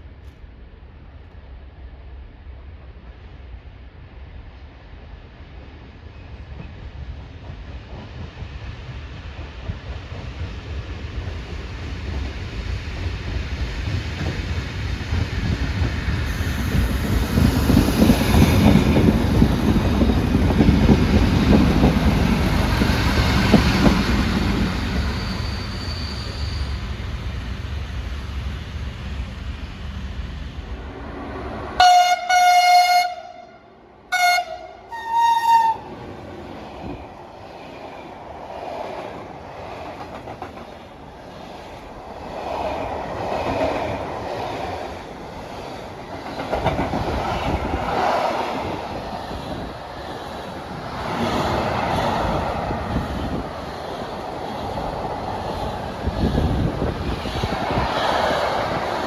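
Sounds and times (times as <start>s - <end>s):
train passing rumble: 0.0s - 59.0s
train horn blasts: 31.8s - 35.8s.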